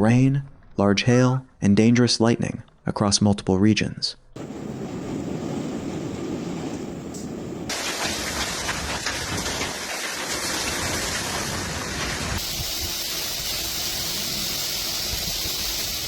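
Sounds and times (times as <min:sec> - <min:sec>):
heavy rain pouring: 0:04.4 - 0:16.0.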